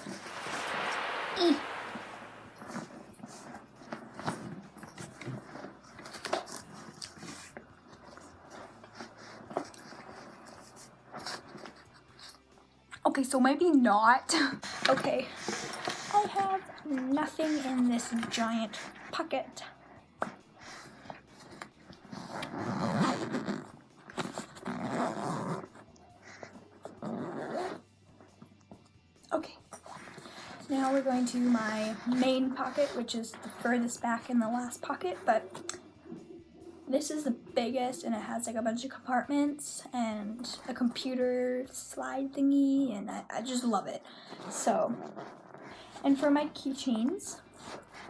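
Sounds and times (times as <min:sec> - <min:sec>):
backpack zipper pulled: 0:21.4 - 0:25.8, 0:26.5 - 0:27.8, 0:44.2 - 0:46.0.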